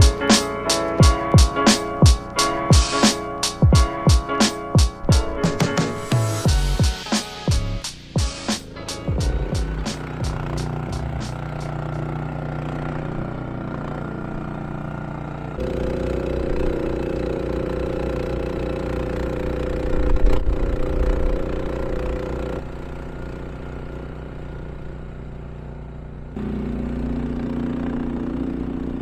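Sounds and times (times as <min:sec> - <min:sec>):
snowblower engine running: 0:10.0 - 0:29.0.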